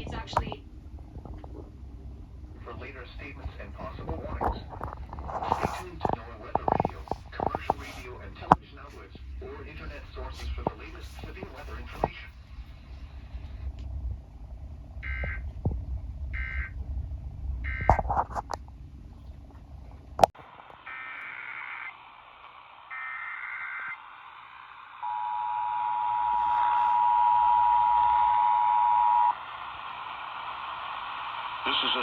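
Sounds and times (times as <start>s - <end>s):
low rumble: 0.0s - 20.3s.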